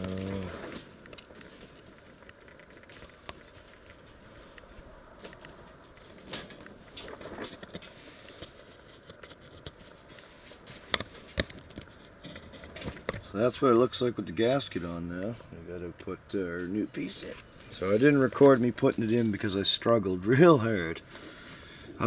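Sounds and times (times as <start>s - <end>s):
small ticks: 0.0s - 13.3s
light rustles: 0.0s - 20.0s.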